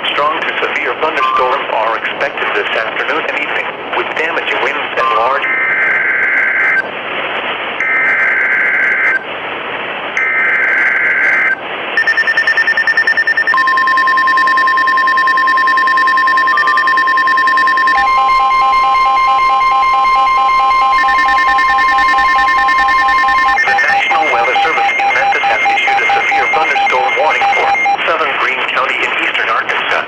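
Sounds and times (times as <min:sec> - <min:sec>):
alert tones: 0:12.0 - 0:28.0
two-tone data bursts: 0:12.0 - 0:28.0.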